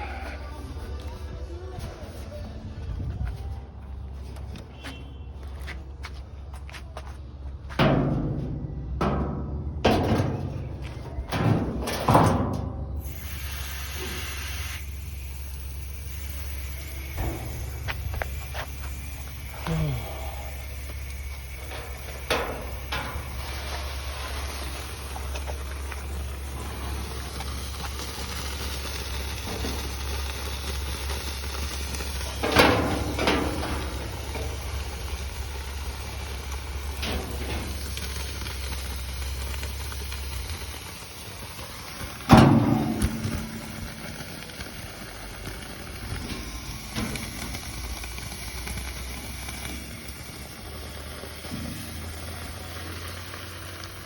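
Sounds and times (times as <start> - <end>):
water hissing on hot metal: 11.3 - 54.0.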